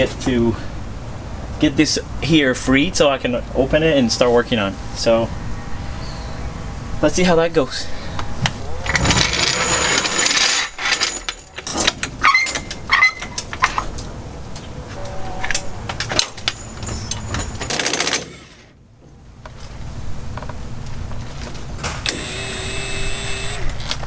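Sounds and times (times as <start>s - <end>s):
tools clanking on metal: 8.8s - 14.1s, 15.5s - 18.7s.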